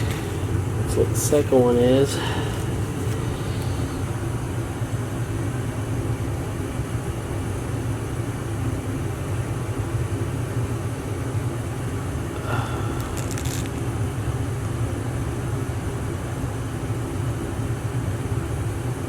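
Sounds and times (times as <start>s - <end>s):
low rumbling hum: 0.0s - 6.0s, 12.2s - 14.5s.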